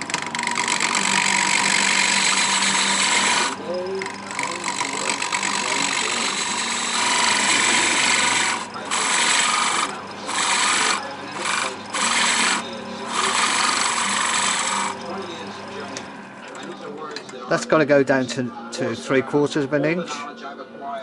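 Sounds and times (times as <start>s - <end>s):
faint lathe hum: 0.0s - 21.0s
gouge hissing on spinning wood: 1.5s - 3.8s, 4.6s - 15.0s.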